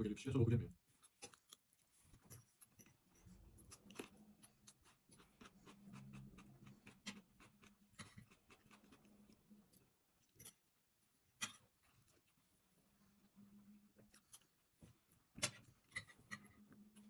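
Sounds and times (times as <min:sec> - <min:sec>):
chewing mouth noises: 0:02.4 - 0:09.5.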